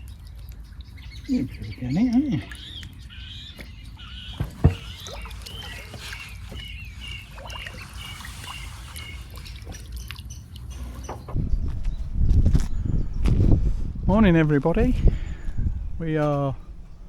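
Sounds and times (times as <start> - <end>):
birds chirping: 0.0 - 17.0
low steady rumble: 11.3 - 17.0.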